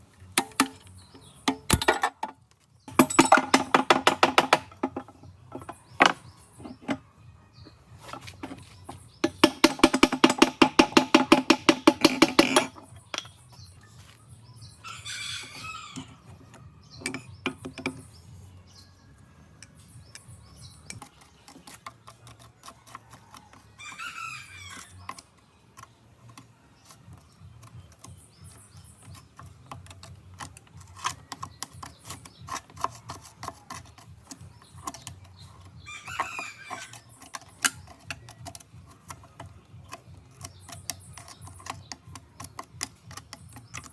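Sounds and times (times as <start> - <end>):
rooster crowing: 14.8 - 16.2, 22.8 - 25.0, 35.9 - 37.0
clicks and taps: 36.7 - 43.9.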